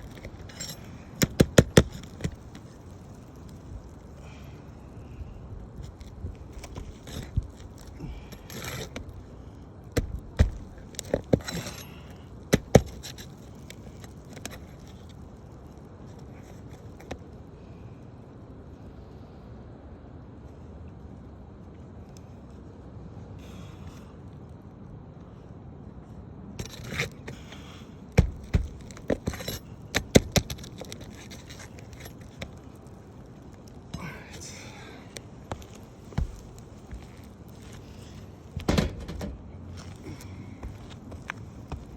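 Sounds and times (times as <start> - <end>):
hard objects clicking and knocking: 0.0 - 2.8, 10.0 - 14.7, 28.1 - 32.6, 38.6 - 40.0
tool scraping roof shingles: 0.0 - 3.2, 5.9 - 9.3, 9.9 - 15.0, 26.6 - 33.0, 35.6 - 41.9
sharp knocks on shingles: 1.2 - 2.4, 9.9 - 11.6, 12.5 - 13.2, 28.1 - 31.1.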